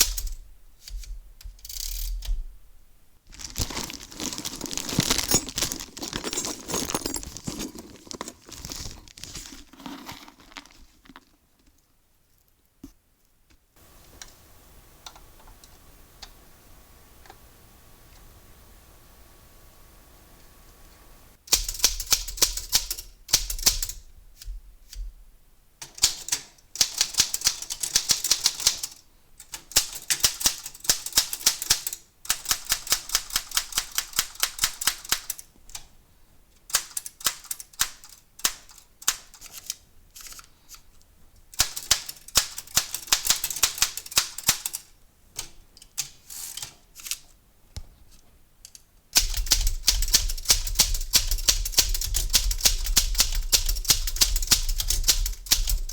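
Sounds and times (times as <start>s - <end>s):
manual typewriter keystroke clacks: 0.0s - 2.5s, 21.5s - 24.5s, 25.8s - 35.9s, 36.7s - 40.4s, 41.6s - 47.2s, 49.2s - 55.9s.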